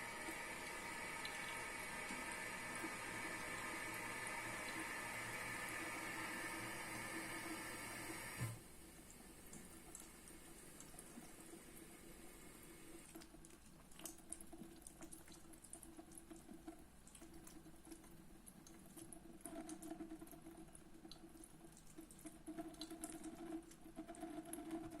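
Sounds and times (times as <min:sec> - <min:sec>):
water drips and splashes: 0:00.0 - 0:05.4, 0:13.0 - 0:25.0
tap water running into sink: 0:00.0 - 0:08.6.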